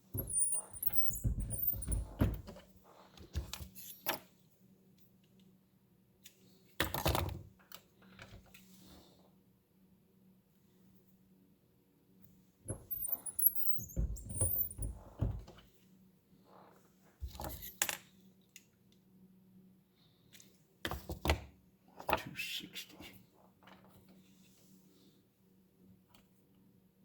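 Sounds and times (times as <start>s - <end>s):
metallic clinks and knocks: 0.2s - 2.6s, 12.7s - 15.2s.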